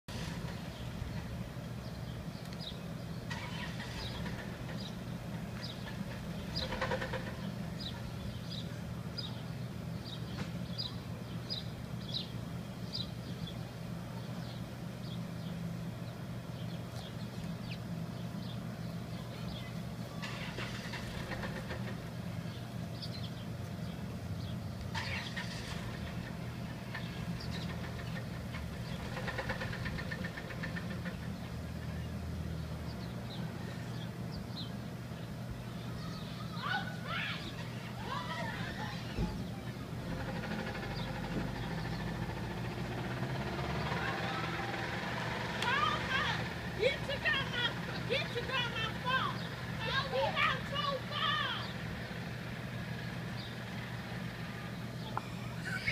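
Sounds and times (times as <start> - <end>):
engine running with rod knock: 0.1 - 1.7, 2.5 - 8.2, 10.3 - 10.8, 20.2 - 22.4, 24.8 - 33.2, 39.0 - 50.9.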